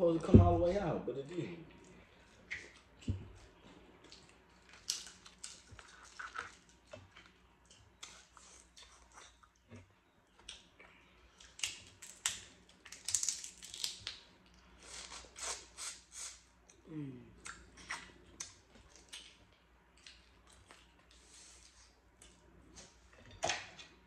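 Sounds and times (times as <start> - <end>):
chewing: 4.0 - 11.8, 17.4 - 23.0.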